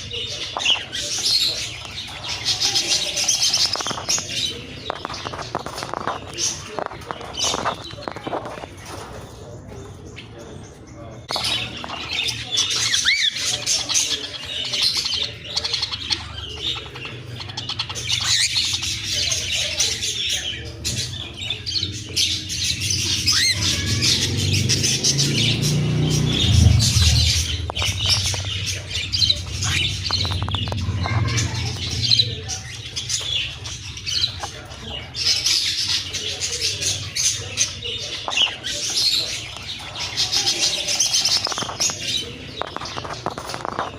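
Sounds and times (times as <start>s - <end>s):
parrots chirping and squawking: 0.0s - 43.9s
low rumble: 25.1s - 32.4s.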